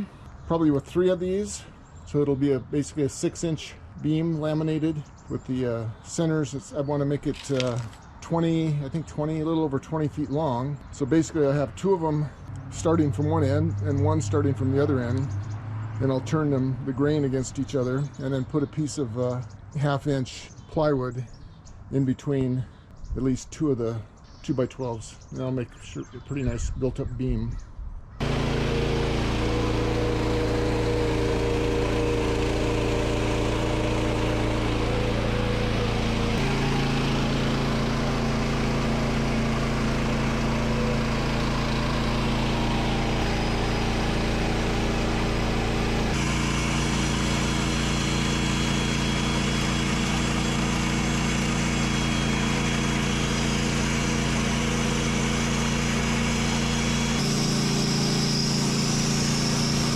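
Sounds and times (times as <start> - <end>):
bandsaw mill engine running: 11.0 - 15.4, 28.2 - 59.9
saw cutting log: 28.2 - 59.9.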